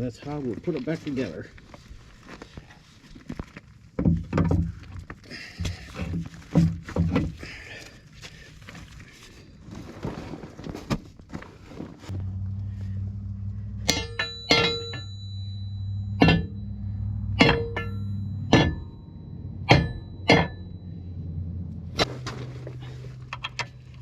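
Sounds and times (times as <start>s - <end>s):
metal clanging: 12.1s - 24.0s
steady low hum: 12.1s - 24.0s.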